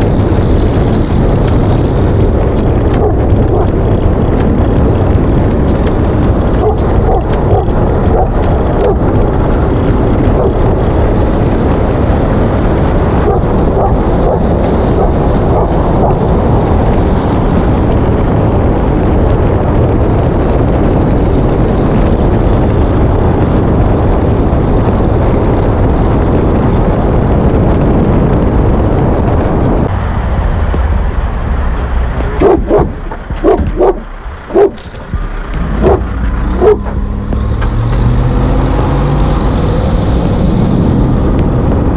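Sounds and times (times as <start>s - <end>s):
moving vehicle noise: 0.0s - 41.9s
dog barking: 6.6s - 9.0s, 32.3s - 34.8s, 35.8s - 36.8s.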